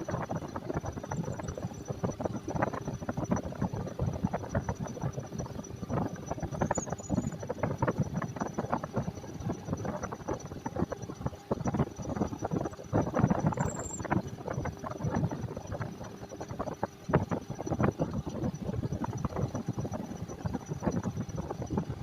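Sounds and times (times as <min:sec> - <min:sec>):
faint steady whine: 0:00.0 - 0:22.0.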